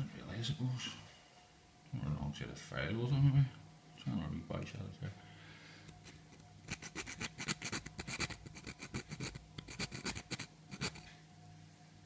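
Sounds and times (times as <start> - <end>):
file rasping on steel: 6.7 - 11.1.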